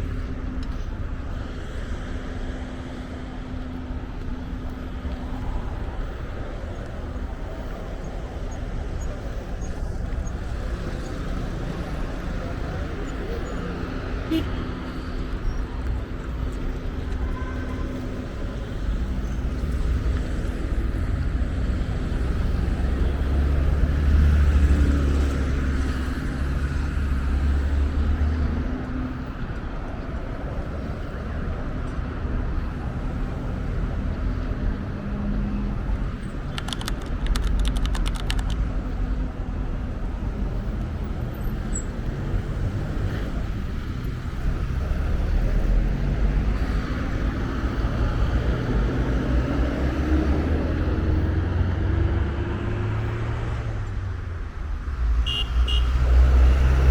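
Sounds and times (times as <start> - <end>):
passing cars: 0.0 - 56.9
rapid clicks: 36.4 - 38.7.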